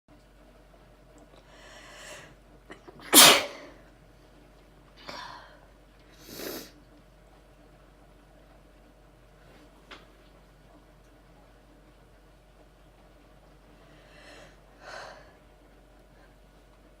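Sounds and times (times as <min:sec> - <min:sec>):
person sneezing: 0:03.0 - 0:03.7.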